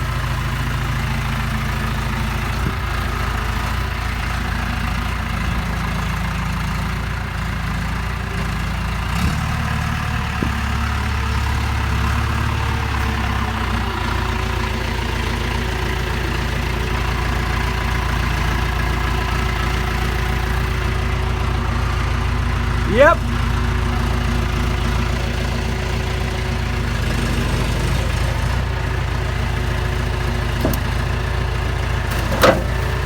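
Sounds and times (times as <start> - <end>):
tractor engine idling: 0.0 - 33.0
short knocks: 10.2 - 10.9, 30.6 - 31.1, 32.1 - 33.0.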